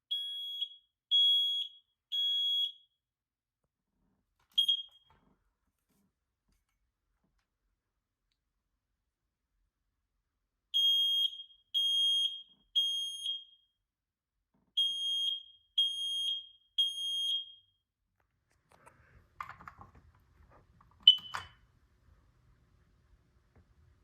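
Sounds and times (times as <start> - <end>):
smoke alarm beeping: 0.0 - 3.0, 4.6 - 5.1, 10.8 - 13.8, 14.8 - 17.8, 21.0 - 21.6
smoke alarm chirp: 0.0 - 3.0, 4.6 - 5.1, 10.8 - 13.8, 14.8 - 17.8, 21.0 - 21.6.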